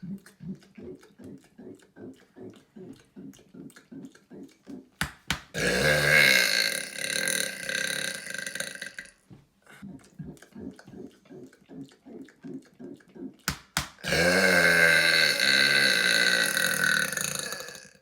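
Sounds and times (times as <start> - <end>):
man burping loudly: 5.5 - 9.2, 14.0 - 18.0.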